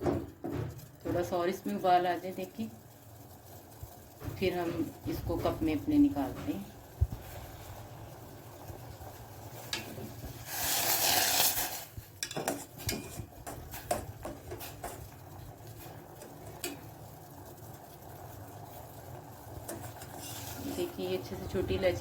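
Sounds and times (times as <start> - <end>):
metal spoon clinking in saucepan: 12.2 - 13.6.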